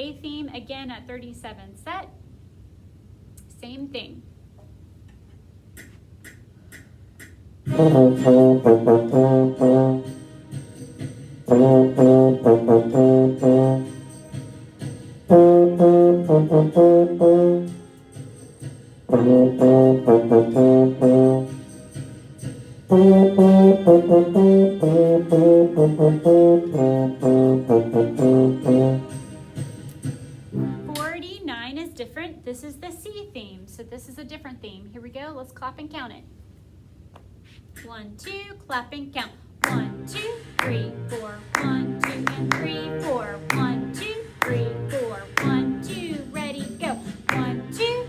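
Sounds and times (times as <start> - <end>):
trombone playing short detached notes: 7.7 - 10.3, 11.5 - 14.1, 15.3 - 17.8, 19.1 - 21.7, 22.9 - 29.5, 39.6 - 46.0.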